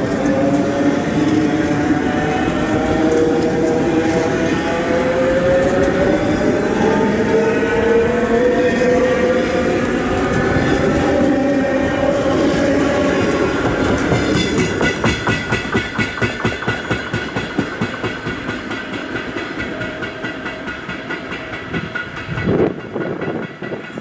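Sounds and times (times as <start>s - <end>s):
electric train passing: 0.0s - 24.0s
train car knocking: 9.8s - 24.0s.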